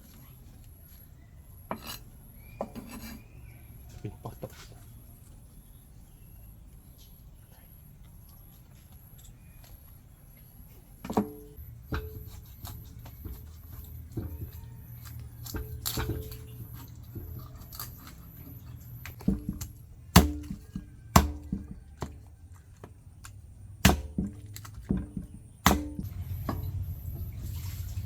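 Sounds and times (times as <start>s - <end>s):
knife chopping on wooden board: 19.1s - 22.2s, 23.8s - 26.7s.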